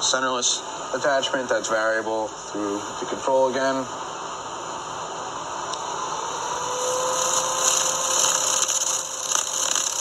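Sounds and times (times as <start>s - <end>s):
faint motor whine: 0.0s - 10.0s
grinder mechanical whir: 5.7s - 10.0s.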